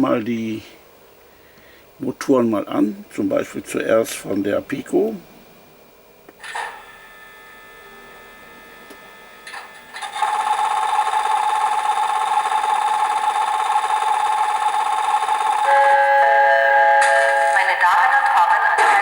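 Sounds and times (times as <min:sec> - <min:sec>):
locomotive running hum: 0:06.4 - 0:19.0.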